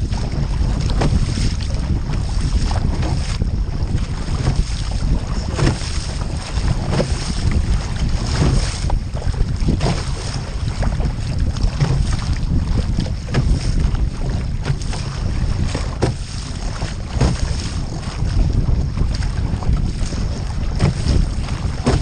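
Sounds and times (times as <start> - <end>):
water splashing from paddling: 0.0 - 22.0
wind buffeting microphone: 0.0 - 22.0.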